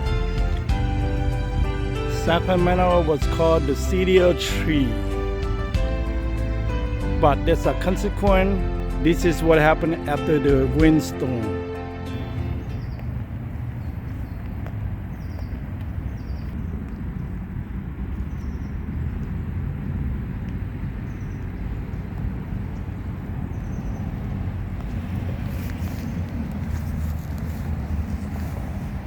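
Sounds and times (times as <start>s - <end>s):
steady low rumble: 0.0s - 29.0s.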